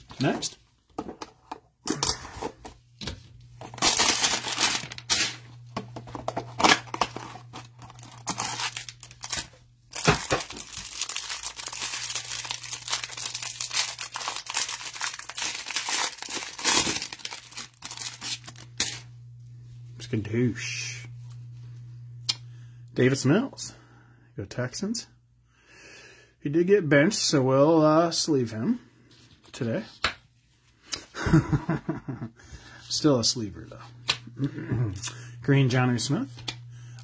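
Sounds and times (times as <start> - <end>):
packaging tearing and crinkling: 3.6 - 5.4, 6.2 - 19.1.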